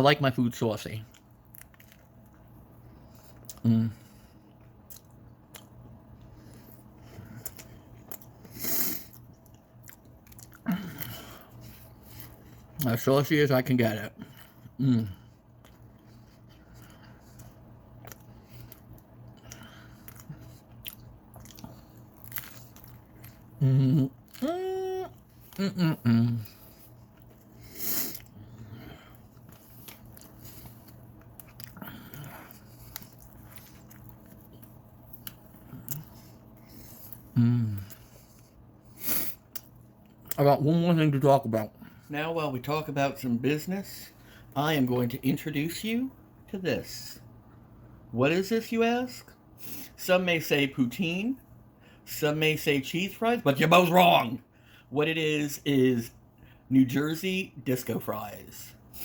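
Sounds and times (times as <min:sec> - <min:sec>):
chewing a sandwich: 0:00.9 - 0:13.0, 0:14.2 - 0:40.4.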